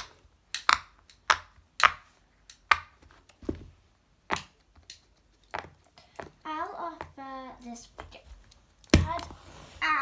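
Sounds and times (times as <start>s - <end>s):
fidget toy clicks and pops: 0.0s - 2.9s.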